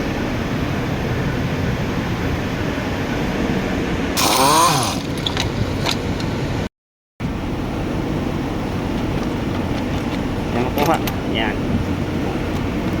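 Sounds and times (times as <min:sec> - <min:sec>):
engine running: 0:00.0 - 0:13.0
short squeal: 0:04.2 - 0:05.1.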